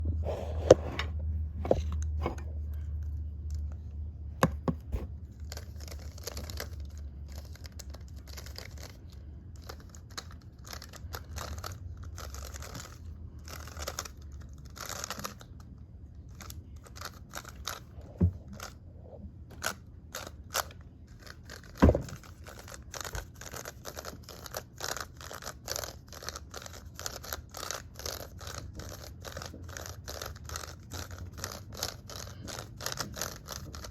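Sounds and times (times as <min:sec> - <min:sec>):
plastic puzzle clicking and scraping: 0:04.4 - 0:18.8.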